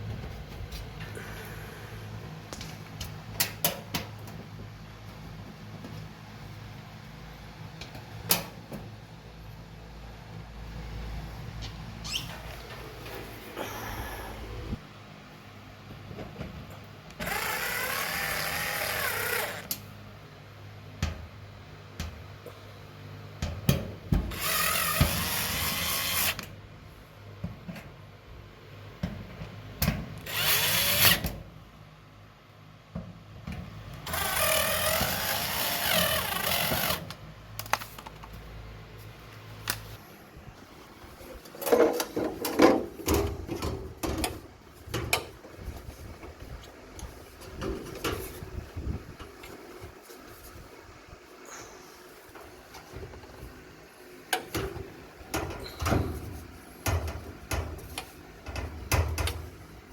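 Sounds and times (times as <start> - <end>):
power drill whining: 17.2 - 19.7, 24.3 - 26.5, 30.2 - 31.3, 34.0 - 37.0
sharp clicks and knocks: 54.3 - 59.5.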